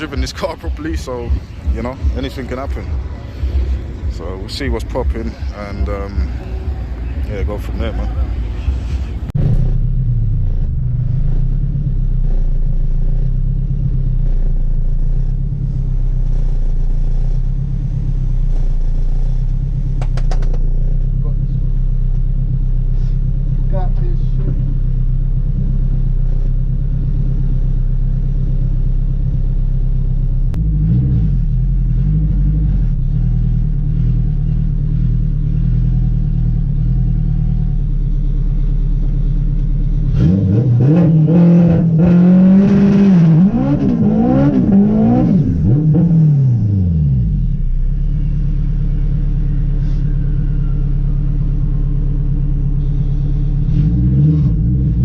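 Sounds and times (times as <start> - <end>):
car engine idling and revving: 0.0 - 55.0.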